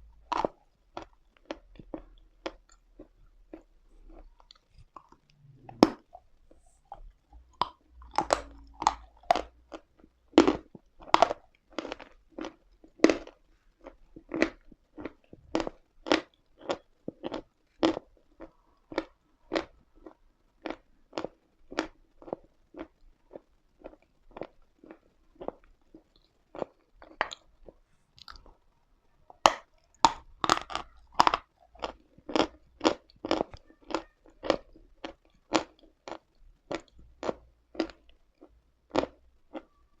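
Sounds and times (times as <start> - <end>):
chalk being crunched and chewed: 29.4 - 38.0.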